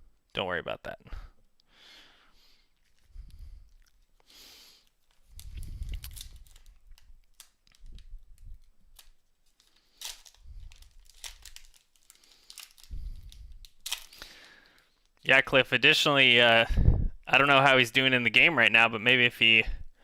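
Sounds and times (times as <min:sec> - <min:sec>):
foil wrapper crackling: 0:04.9 - 0:15.2.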